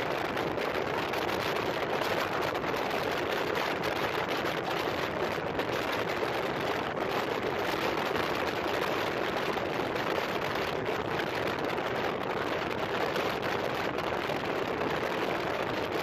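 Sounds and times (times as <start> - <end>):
wind and road noise: 0.0 - 16.0.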